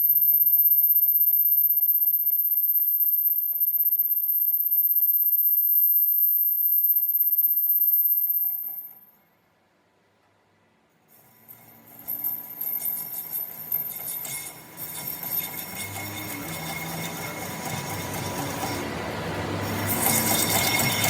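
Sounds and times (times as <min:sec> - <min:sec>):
machine high-pitched whine: 0:00.0 - 0:09.0, 0:11.2 - 0:21.0
faint rhythmic ticking: 0:00.0 - 0:09.1.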